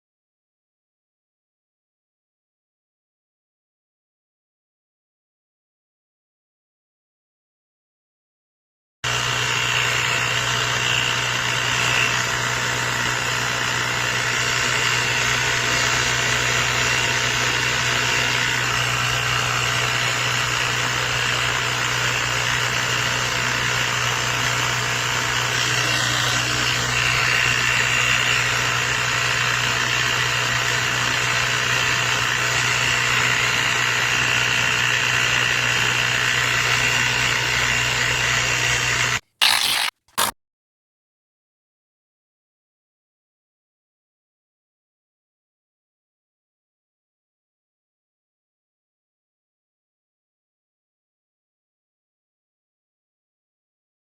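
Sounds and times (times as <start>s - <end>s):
mini air compressor buzzing: 9.1s - 40.3s.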